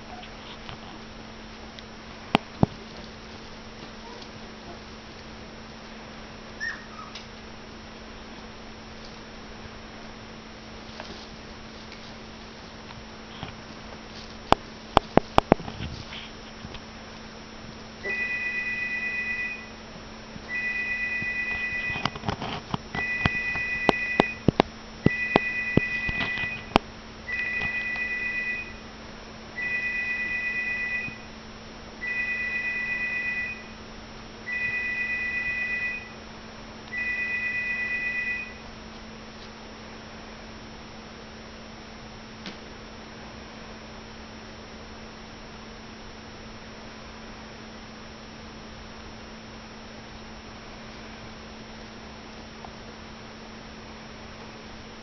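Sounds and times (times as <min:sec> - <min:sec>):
steady low hum: 0:00.0 - 0:55.0
two-tone electronic beep: 0:18.0 - 0:19.8, 0:20.5 - 0:22.2, 0:23.0 - 0:24.5, 0:25.1 - 0:28.8, 0:29.6 - 0:31.3, 0:32.0 - 0:33.8, 0:34.5 - 0:36.2, 0:36.9 - 0:38.6.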